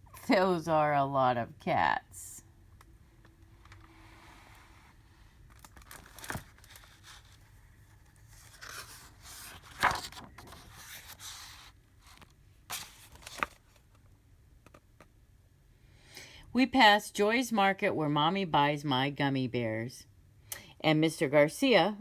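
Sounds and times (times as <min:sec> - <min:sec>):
book pages rustling: 0:03.2 - 0:15.1.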